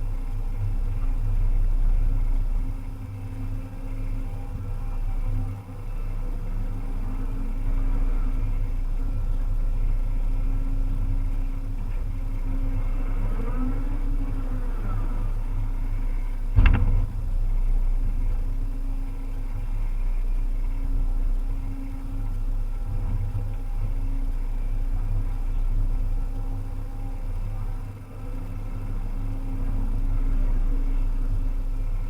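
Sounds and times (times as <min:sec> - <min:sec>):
excavator diesel engine running: 0:00.0 - 0:32.0
faint whines: 0:00.0 - 0:32.0
sharp knock: 0:16.6 - 0:17.2.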